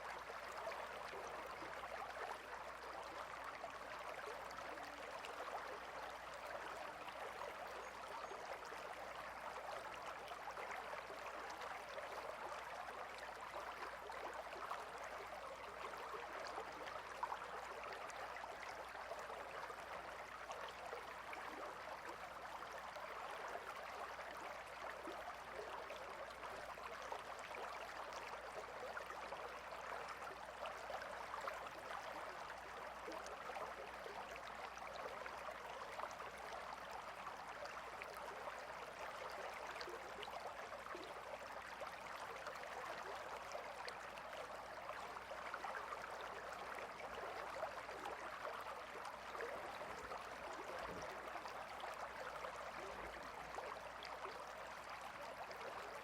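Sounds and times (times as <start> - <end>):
river water babbling: 0.0 - 56.0.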